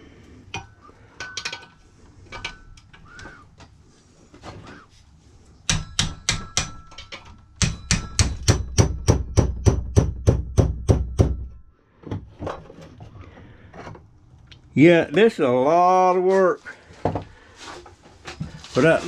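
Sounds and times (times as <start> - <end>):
hammer striking metal: 5.7 - 11.7.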